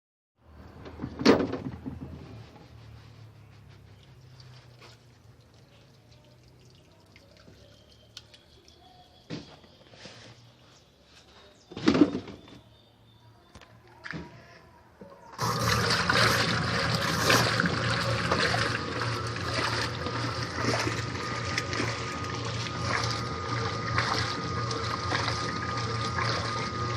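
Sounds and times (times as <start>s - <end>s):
knocks and clunks: 0.8s - 2.4s
churning water: 5.1s - 8.8s, 15.3s - 26.9s
washing machine running: 15.3s - 26.9s.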